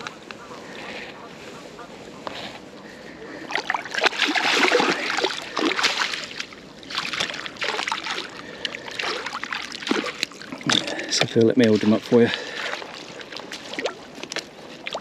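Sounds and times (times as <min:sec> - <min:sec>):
water splashing in a landing net: 0:03.3 - 0:15.0.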